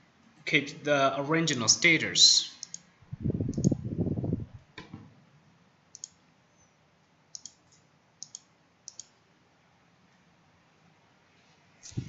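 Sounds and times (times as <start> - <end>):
computer mouse double-clicks: 2.6 - 2.9, 3.5 - 3.8, 5.9 - 6.2, 7.3 - 9.1.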